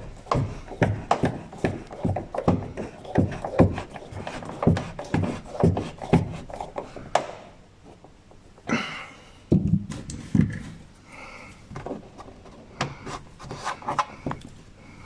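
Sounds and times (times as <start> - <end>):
scraping rub: 0.0 - 7.1, 12.5 - 14.2.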